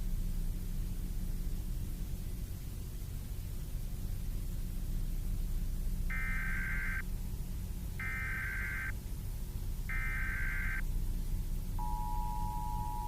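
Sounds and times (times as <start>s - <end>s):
low background noise: 0.0s - 13.0s
two-tone alert signal: 11.8s - 13.0s.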